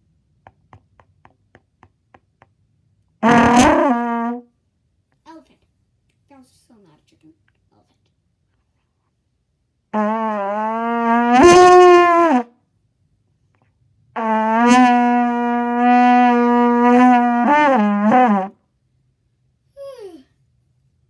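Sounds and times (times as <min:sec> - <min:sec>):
trumpet imitating an elephant: 0:03.2 - 0:04.4, 0:10.0 - 0:12.4, 0:14.2 - 0:18.6.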